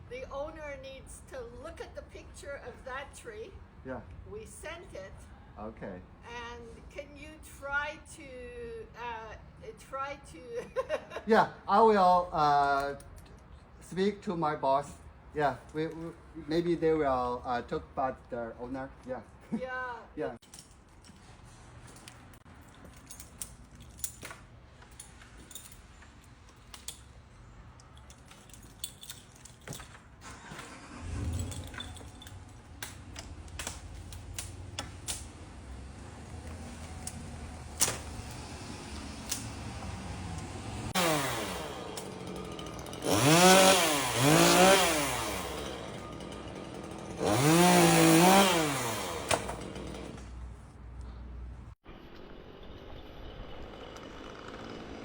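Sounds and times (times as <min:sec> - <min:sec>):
chainsaw engine revving: 0:30.3 - 0:32.2, 0:33.3 - 0:50.4, 0:53.4 - 0:55.0.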